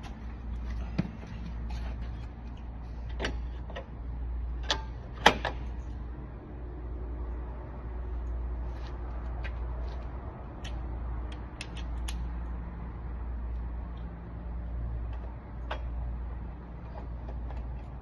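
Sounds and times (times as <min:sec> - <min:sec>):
metallic clicks and knocks: 0:15.0 - 0:16.0.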